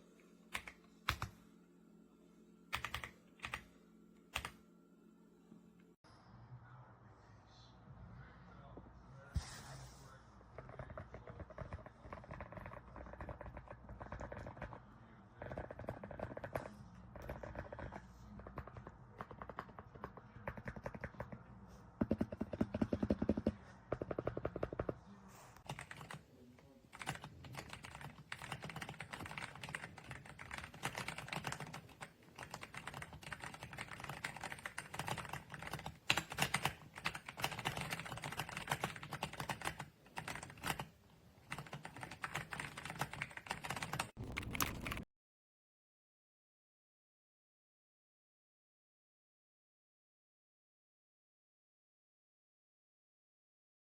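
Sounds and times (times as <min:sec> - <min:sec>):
mechanical keyboard typing clatter: 0:02.7 - 0:03.6, 0:10.6 - 0:14.8, 0:15.4 - 0:21.4, 0:22.0 - 0:25.0, 0:25.6 - 0:26.2, 0:26.9 - 0:45.0.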